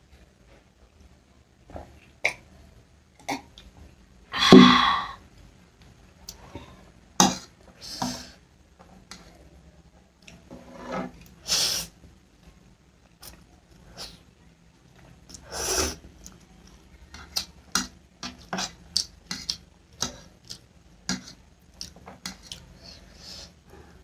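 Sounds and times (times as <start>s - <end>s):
loud throaty burst: 4.4s - 5.2s
person eating close up: 18.3s - 22.8s.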